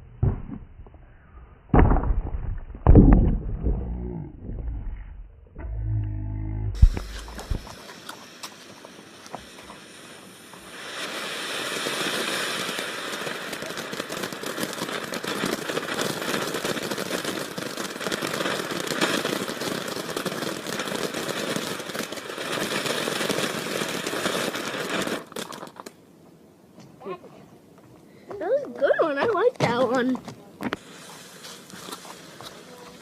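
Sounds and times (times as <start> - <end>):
ground firework hissing: 6.8 - 26.0, 29.8 - 33.0
firework crackling: 6.8 - 26.1, 28.4 - 33.0.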